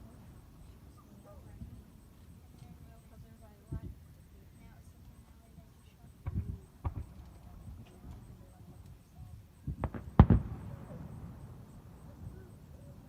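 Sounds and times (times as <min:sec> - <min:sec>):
fireworks booming: 0:06.2 - 0:07.9, 0:09.6 - 0:13.0.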